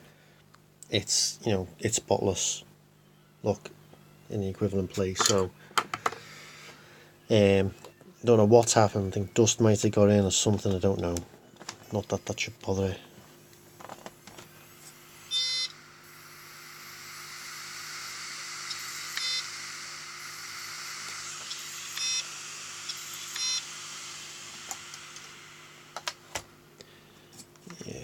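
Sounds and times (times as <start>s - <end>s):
hard drive whirring hiss: 11.6s - 28.0s
short electronic beeps: 15.3s - 15.7s, 18.7s - 19.5s, 21.6s - 22.2s, 23.0s - 23.6s.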